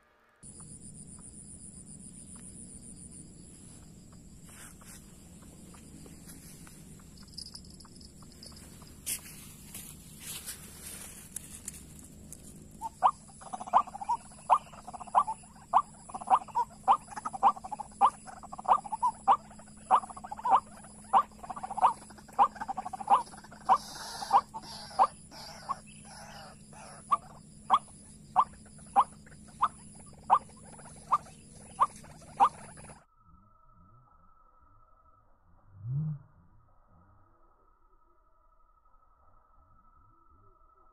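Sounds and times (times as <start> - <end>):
waterhen croaking calls: 12.4 - 33.0.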